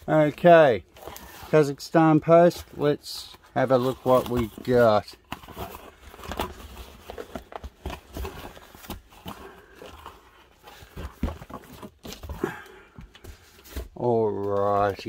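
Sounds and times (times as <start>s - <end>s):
packaging rustling and crinkling: 0.1s - 15.0s.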